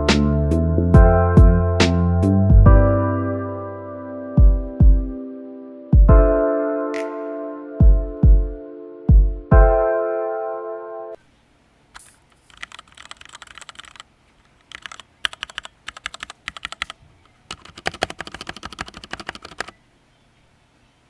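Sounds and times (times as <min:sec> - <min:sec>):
mechanical keyboard typing: 0:12.0 - 0:19.8.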